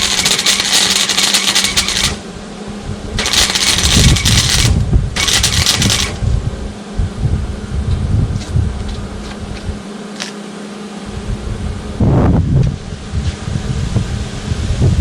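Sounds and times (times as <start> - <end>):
welder arc crackling: 0.0 - 2.2, 3.2 - 6.2
steady low hum: 0.0 - 15.0.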